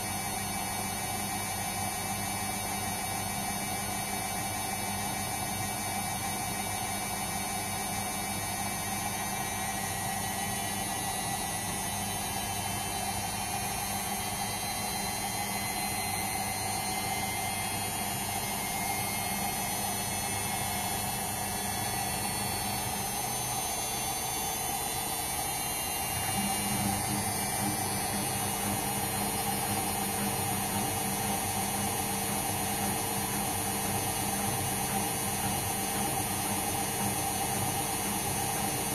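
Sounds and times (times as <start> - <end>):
washing machine humming: 0.0 - 38.9.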